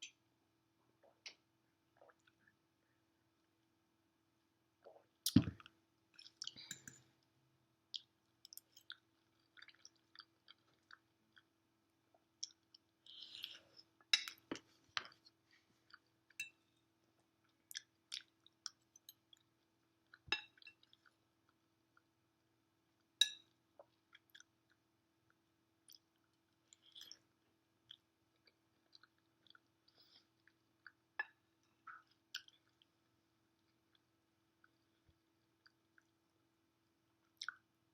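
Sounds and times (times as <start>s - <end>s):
person chewing: 7.9s - 11.5s, 12.1s - 16.4s, 17.4s - 21.6s, 23.8s - 32.9s, 37.2s - 37.7s.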